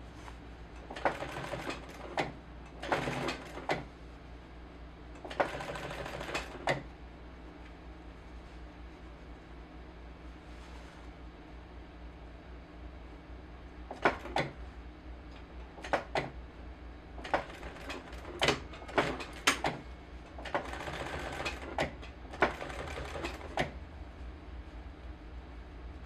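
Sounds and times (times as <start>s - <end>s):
sewing machine clicking: 0.8s - 3.9s, 5.2s - 6.9s, 13.9s - 14.6s, 15.7s - 16.4s, 17.2s - 23.8s.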